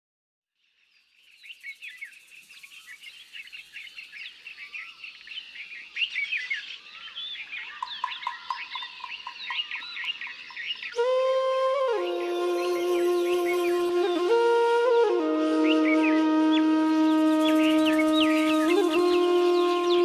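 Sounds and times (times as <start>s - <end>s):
small birds chirping and twittering: 0.5s - 11.2s, 15.7s - 20.0s
low repeated bird call: 1.8s - 20.0s.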